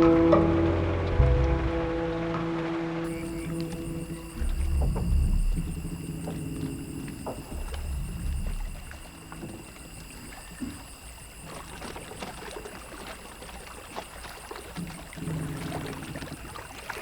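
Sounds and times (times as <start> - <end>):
water sloshing and trickling: 1.1 - 17.0
small knocks: 3.1 - 13.0.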